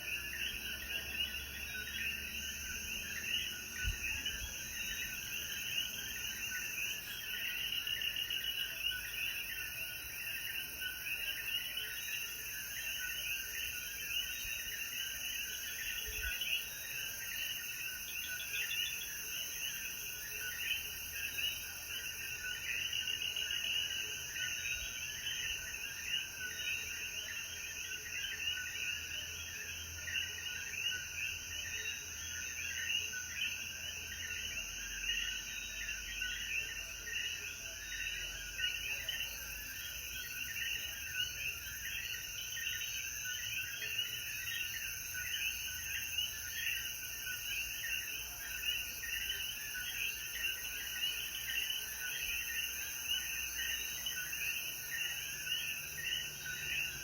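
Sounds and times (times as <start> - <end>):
frogs chirping in chorus: 0.0 - 57.0.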